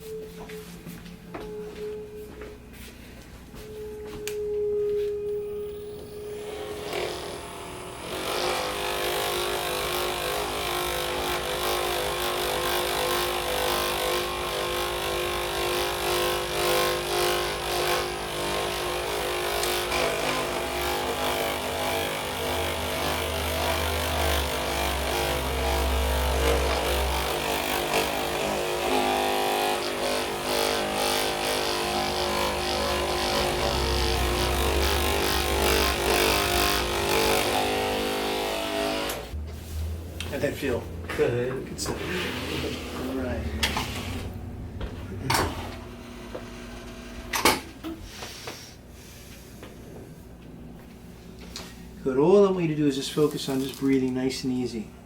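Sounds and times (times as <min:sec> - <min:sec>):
massager motor hum: 0:02.8 - 0:40.8, 0:41.4 - 0:48.0
deep throb: 0:32.1 - 0:38.5.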